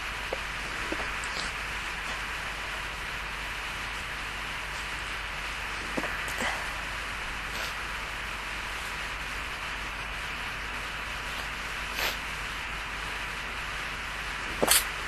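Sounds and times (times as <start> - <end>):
steady hiss: 0.0 - 15.0
stifled sneeze: 14.6 - 15.0.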